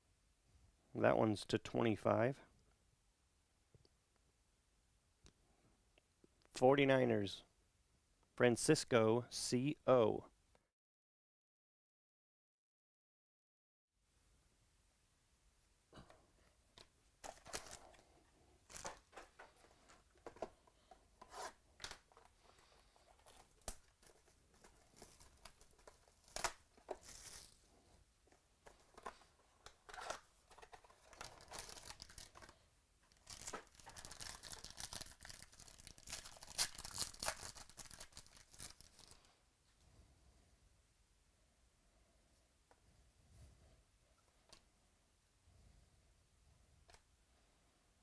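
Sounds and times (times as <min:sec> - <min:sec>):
packaging tearing and crinkling: 0:17.2 - 0:18.0, 0:18.7 - 0:19.3, 0:23.2 - 0:27.6, 0:29.8 - 0:32.5, 0:33.1 - 0:39.2.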